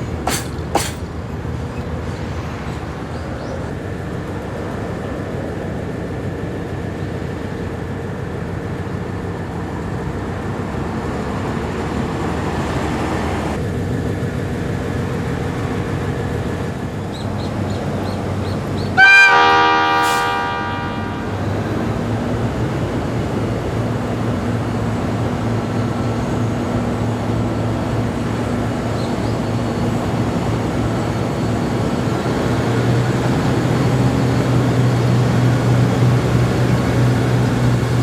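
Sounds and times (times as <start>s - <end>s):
diesel locomotive engine running: 0.0s - 38.0s
locomotive horn blast: 19.0s - 22.0s.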